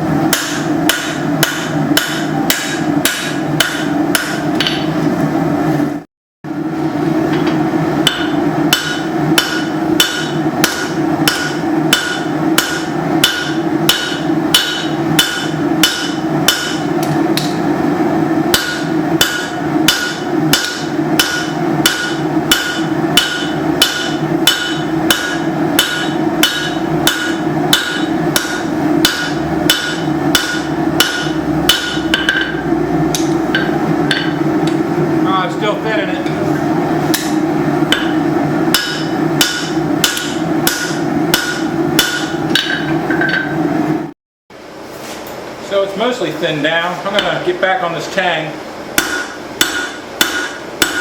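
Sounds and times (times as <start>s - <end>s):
steady hum: 0.0s - 51.0s
hammer striking steel on anvil: 0.3s - 5.0s, 7.4s - 17.6s, 18.5s - 34.8s, 37.1s - 43.6s, 49.0s - 51.0s.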